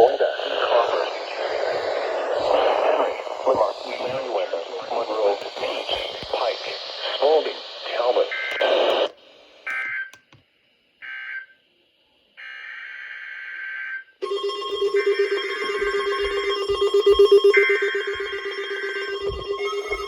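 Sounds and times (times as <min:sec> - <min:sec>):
warning alarm tone: 0:12.4 - 0:20.0
shrill digital data tones: 0:14.2 - 0:20.0.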